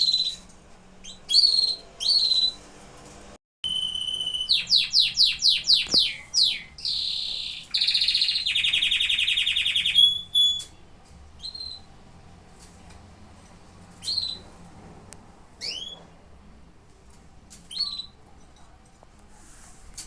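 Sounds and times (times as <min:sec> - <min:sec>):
canary singing: 0:00.0 - 0:02.8, 0:03.6 - 0:12.0, 0:13.9 - 0:14.6, 0:15.6 - 0:16.1, 0:17.6 - 0:18.2.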